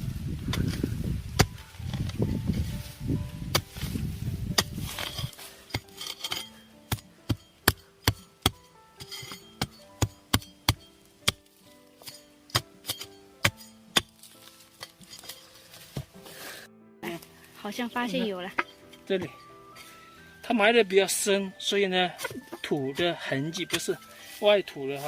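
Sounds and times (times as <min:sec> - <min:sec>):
soft background music: 0:00.0 - 0:25.0
hoe knocking into soil: 0:00.5 - 0:02.7, 0:03.5 - 0:16.2, 0:22.2 - 0:24.0.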